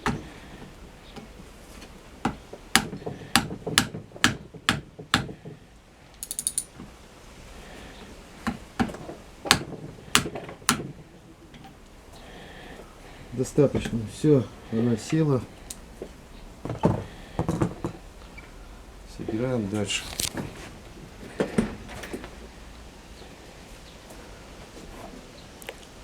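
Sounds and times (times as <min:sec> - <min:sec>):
ratchet wrench clicking: 0:06.2 - 0:06.7.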